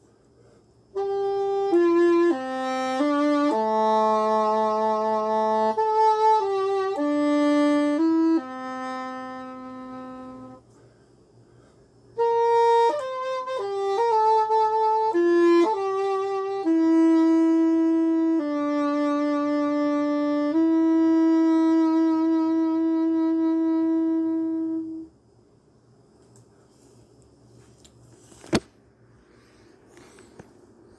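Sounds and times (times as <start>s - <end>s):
english horn melody: 0.9s - 10.6s, 12.2s - 25.1s.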